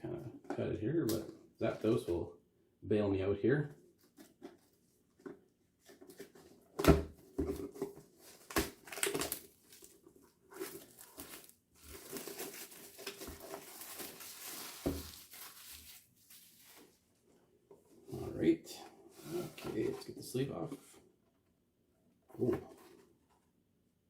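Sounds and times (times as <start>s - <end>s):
plastic wrap crinkling and tearing: 8.2s - 17.0s.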